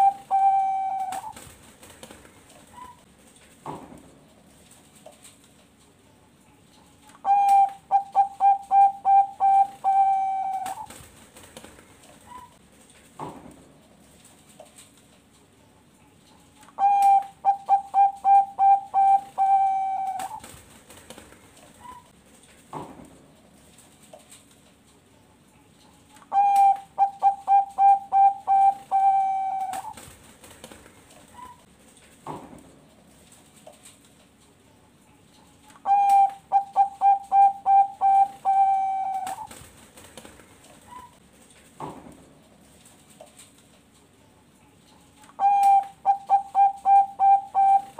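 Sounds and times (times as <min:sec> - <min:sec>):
dove cooing: 0:00.0 - 0:01.4, 0:07.2 - 0:10.9, 0:16.8 - 0:20.5, 0:26.3 - 0:30.0, 0:35.8 - 0:39.5, 0:45.4 - 0:47.9.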